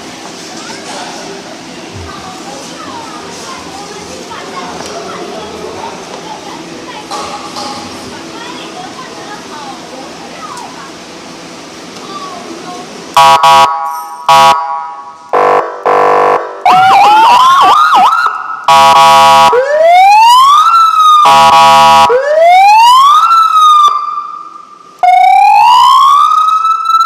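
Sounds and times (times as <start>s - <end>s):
buzzing siren horn blasts: 13.2s - 23.9s
rising and falling siren wail: 13.2s - 27.0s
warbling siren yelp: 13.2s - 27.0s.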